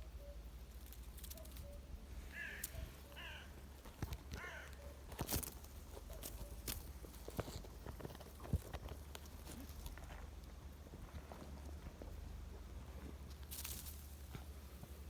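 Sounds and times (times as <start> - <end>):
harsh bird calls: 1.7 - 5.0.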